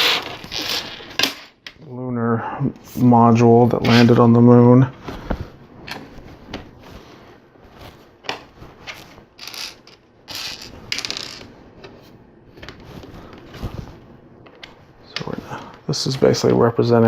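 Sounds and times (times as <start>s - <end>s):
short rustles: 12.0s - 16.5s.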